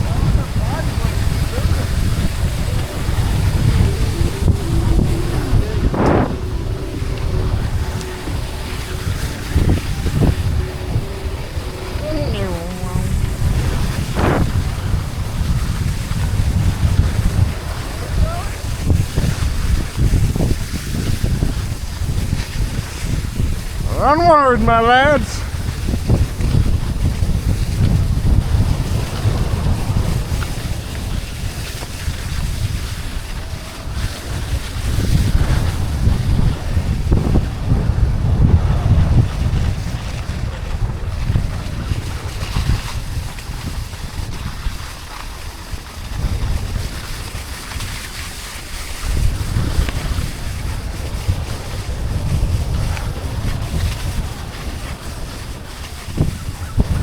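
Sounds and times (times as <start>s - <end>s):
wind buffeting microphone: 0.0s - 57.0s
skis sliding over snow: 25.6s - 36.3s, 39.4s - 57.0s.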